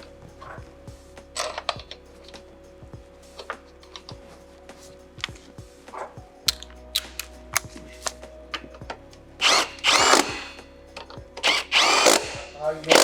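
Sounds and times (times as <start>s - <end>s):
sharp clicks: 6.5s - 8.7s, 9.4s - 10.5s, 11.4s - 13.0s
cordless power driver whining: 9.4s - 10.6s, 11.4s - 13.0s.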